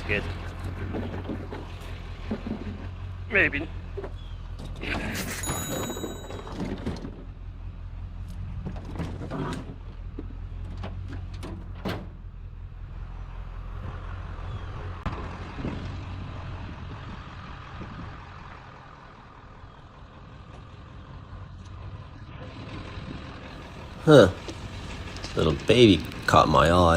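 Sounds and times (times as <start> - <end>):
truck engine running: 0.0 - 26.9
sharp knocks and clatters: 0.3 - 3.3, 3.9 - 7.4.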